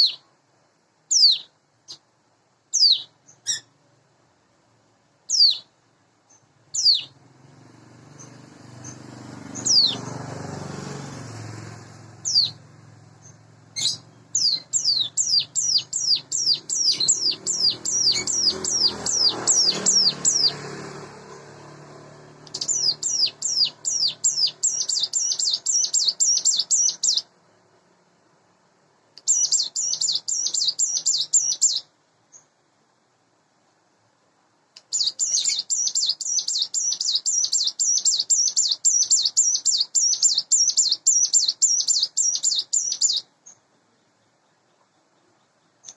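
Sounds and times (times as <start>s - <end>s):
bird trilling repeated note: 1.1s - 2.0s, 2.8s - 3.7s, 13.2s - 20.6s, 22.5s - 27.2s, 29.2s - 31.9s.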